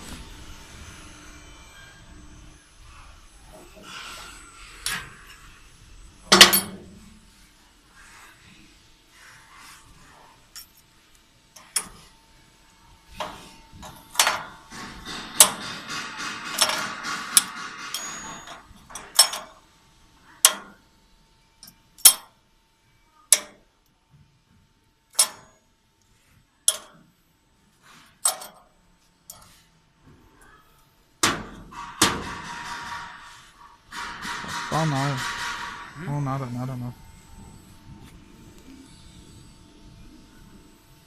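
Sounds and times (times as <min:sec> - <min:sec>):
metal scraping and clattering: 0:13.1 - 0:19.6, 0:31.4 - 0:36.9
metal pieces knocking: 0:14.2 - 0:19.5.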